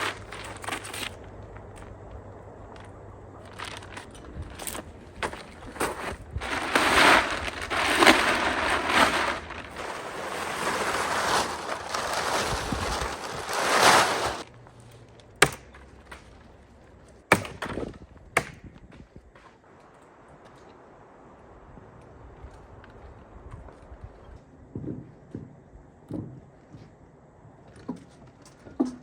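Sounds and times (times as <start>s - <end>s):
wooden panels scraping: 3.8s - 14.4s
sharp wood knocks: 17.3s - 18.8s.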